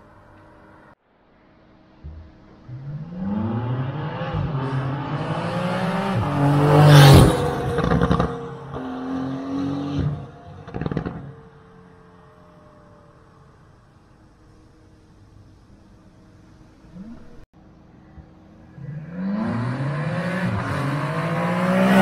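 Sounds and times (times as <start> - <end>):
car engine revving: 2.0 - 12.0, 16.6 - 22.0.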